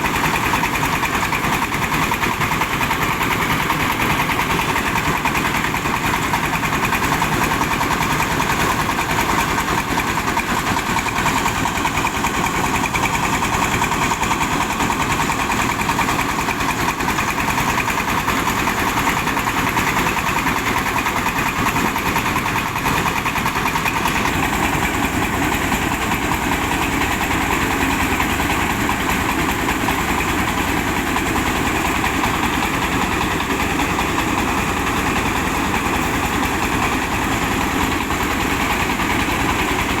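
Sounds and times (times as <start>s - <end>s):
diesel engine running: 0.0s - 40.0s
rice mill hissing: 18.6s - 40.0s.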